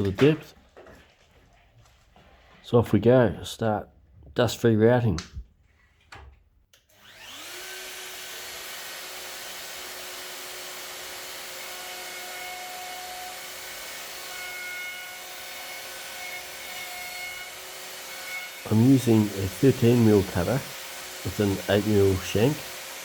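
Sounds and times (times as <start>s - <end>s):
router whining: 6.8s - 23.0s
router cutting wood: 6.9s - 23.0s.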